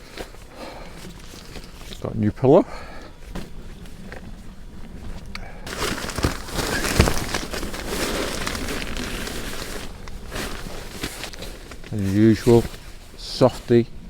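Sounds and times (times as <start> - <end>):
nylon gear crinkling: 5.6 - 13.6.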